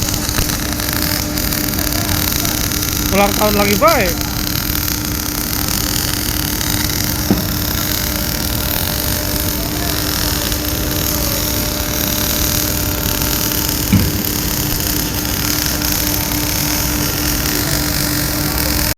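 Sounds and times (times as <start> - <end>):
welding arc noise: 0.0 - 18.9
sharp knocks: 7.3 - 7.7, 13.9 - 14.3.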